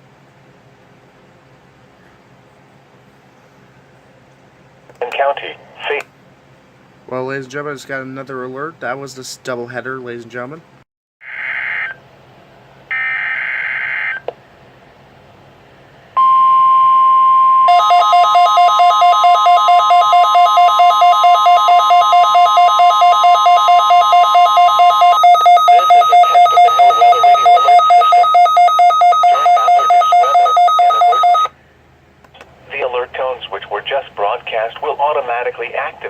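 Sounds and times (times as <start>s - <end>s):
faint broadcast voice: 5.0s - 6.1s, 25.7s - 28.2s, 29.2s - 31.2s, 32.6s - 36.0s
steady warning alarm tone: 16.2s - 31.5s
two-pitch alarm beeping: 16.2s - 31.5s.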